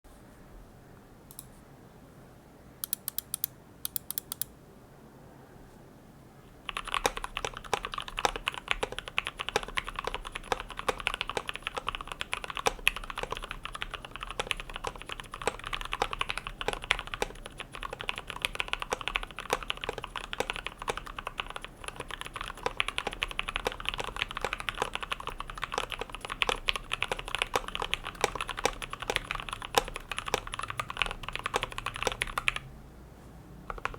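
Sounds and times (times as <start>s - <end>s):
scattered clicks: 1.3s - 1.5s, 2.8s - 4.5s, 6.7s - 21.1s, 33.7s - 33.9s
mechanical keyboard typing: 2.8s - 4.5s, 6.7s - 32.7s, 33.7s - 33.9s.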